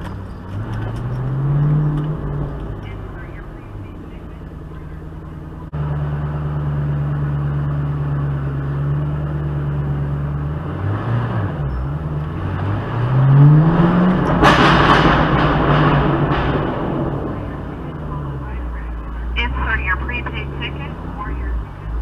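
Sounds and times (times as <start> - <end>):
exhaust pops and crackles: 0.0 - 6.0, 11.5 - 22.0
car exhaust drone: 0.0 - 22.0
engine revving: 0.0 - 22.0.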